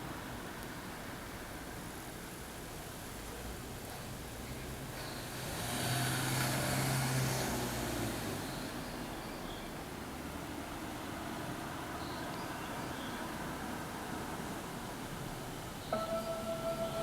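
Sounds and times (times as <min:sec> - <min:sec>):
vehicle engine hum passing by: 0:05.3 - 0:08.8.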